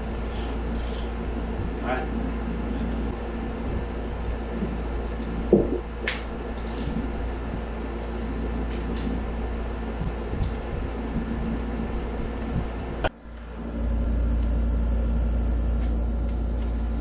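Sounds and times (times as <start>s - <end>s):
machine hum: 0.0s - 17.0s.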